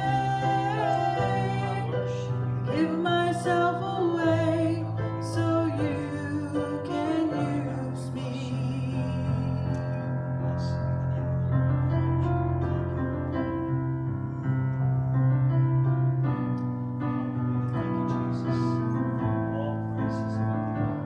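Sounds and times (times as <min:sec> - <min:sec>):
person singing long notes: 0:00.0 - 0:09.9.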